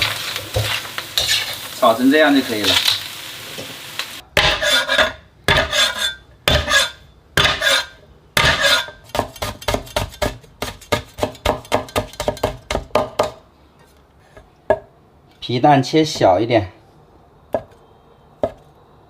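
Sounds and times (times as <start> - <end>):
utensil scraping cookware: 0.0 - 1.7, 4.4 - 10.2.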